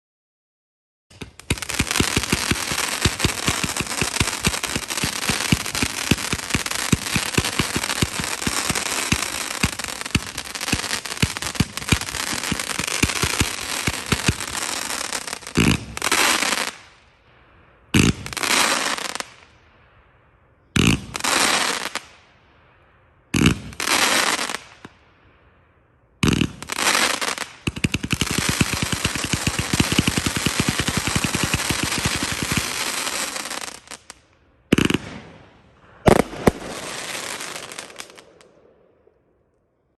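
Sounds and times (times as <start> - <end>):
firework cake firing rapid shots: 1.2 - 16.5, 20.8 - 21.6, 23.4 - 23.8, 26.2 - 33.7, 34.7 - 38.3.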